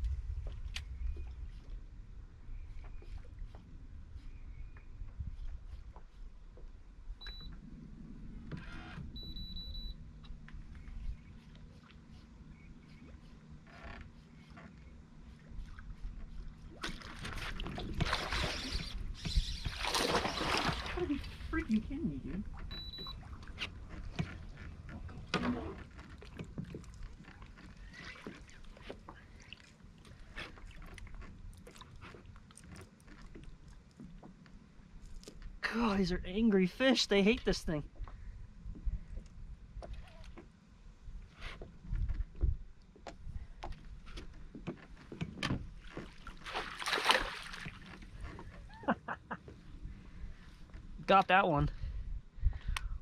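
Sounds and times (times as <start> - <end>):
low steady rumble: 0.0 - 18.2, 20.7 - 45.0
low steady hum: 0.0 - 18.5, 19.7 - 53.0
electronic beeps: 22.7 - 23.2.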